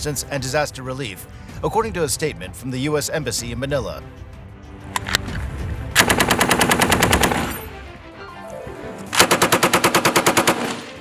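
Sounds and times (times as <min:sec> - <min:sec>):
machine gun firing bursts: 0:09.2 - 0:11.0.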